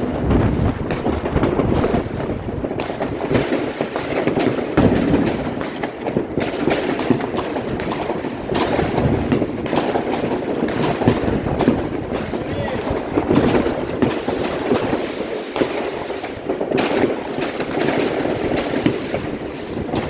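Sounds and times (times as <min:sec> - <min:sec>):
fireworks bangs and crackles: 0:00.0 - 0:20.0
distant bangs: 0:06.6 - 0:16.0.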